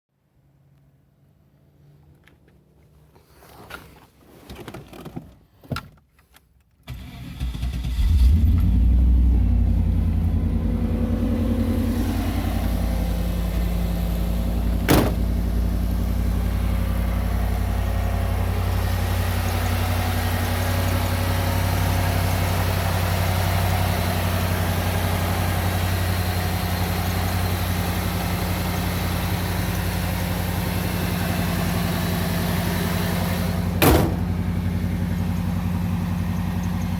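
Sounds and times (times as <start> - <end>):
car engine cranking and starting: 6.8 - 36.9
car engine idling: 7.4 - 36.9.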